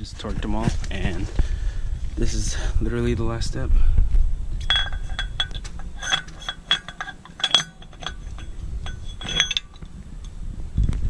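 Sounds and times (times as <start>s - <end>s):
steel parts clinking: 4.6s - 10.4s.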